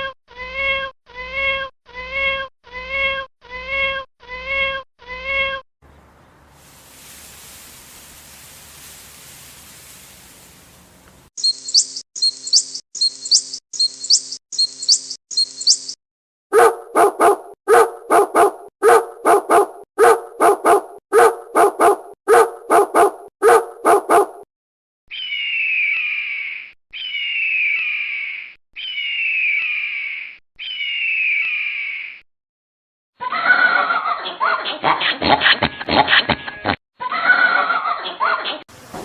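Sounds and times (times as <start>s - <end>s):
steady hiss: 6.5s - 11.3s
short high-pitched calls: 11.4s - 16.0s
dog barking: 16.5s - 24.4s.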